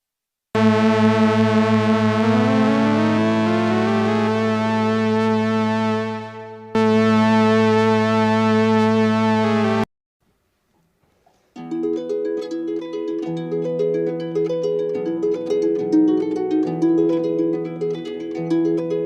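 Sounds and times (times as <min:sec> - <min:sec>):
sustained electronic note: 0:00.6 - 0:09.9.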